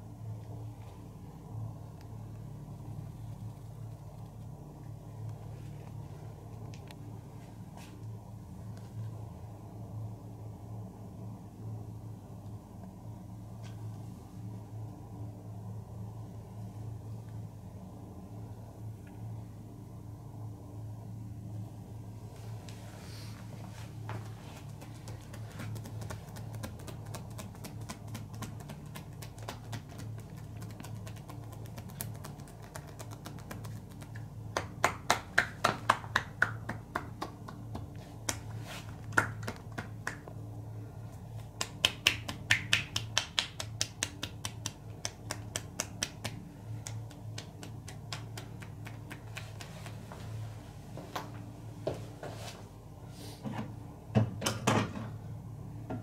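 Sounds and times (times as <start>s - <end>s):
low hum: 0.0s - 54.1s
hands slapping skin: 24.6s - 40.3s, 41.5s - 50.0s.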